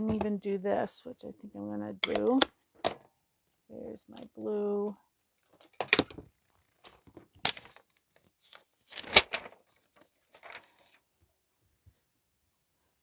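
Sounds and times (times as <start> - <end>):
paper rustling: 6.6 - 11.0.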